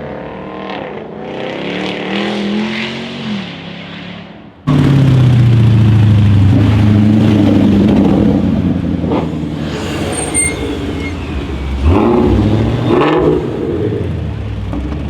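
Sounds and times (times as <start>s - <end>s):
car engine revving: 4.7s - 15.0s.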